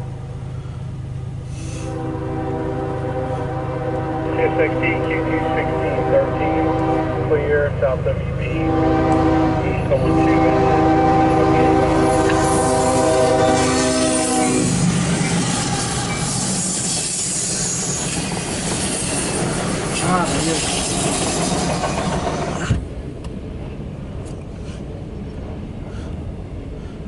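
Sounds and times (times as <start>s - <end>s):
locomotive air horn chord: 1.5s - 14.9s
train wheels rolling on rails: 5.0s - 27.0s
train wheel squeal: 11.9s - 22.8s.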